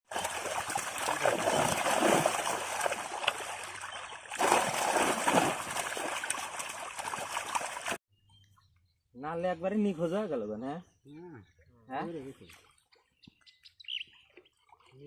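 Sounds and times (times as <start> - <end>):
water splashing and sloshing: 0.0 - 8.0, 14.2 - 15.0.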